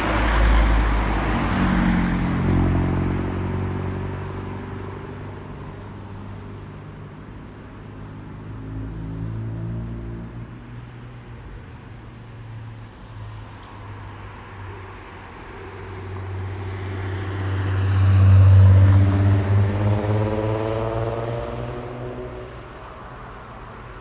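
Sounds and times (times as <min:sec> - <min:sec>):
vehicle driving past: 0:16.2 - 0:22.6.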